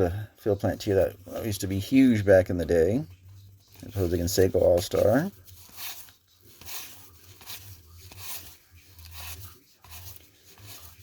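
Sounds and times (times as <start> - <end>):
trading cards swishing: 3.5 - 11.0.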